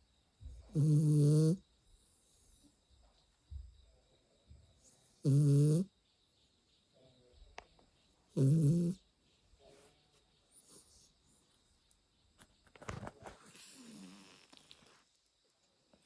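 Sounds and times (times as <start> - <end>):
loud wavering snores: 0.7 - 1.6, 5.2 - 5.9, 8.4 - 9.0
faint breaths: 13.2 - 15.2.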